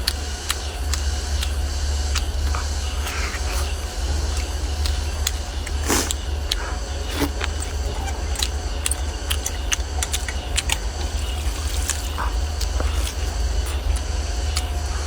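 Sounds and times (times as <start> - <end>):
chewing with wet clicks: 0.0 - 15.0.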